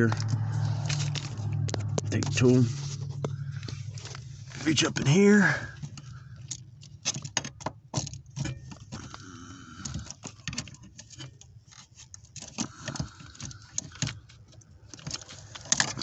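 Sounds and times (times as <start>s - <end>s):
hand tool clicking and scraping: 5.7s - 16.0s.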